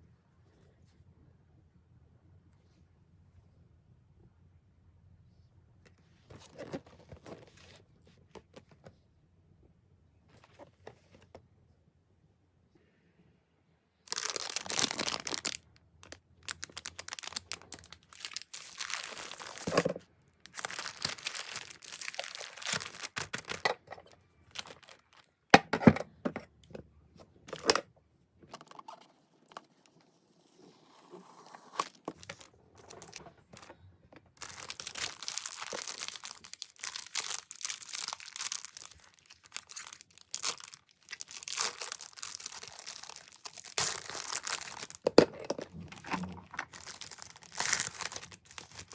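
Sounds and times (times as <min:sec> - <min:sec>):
packaging tearing and crinkling: 0:14.1 - 0:25.2, 0:34.3 - 0:48.9.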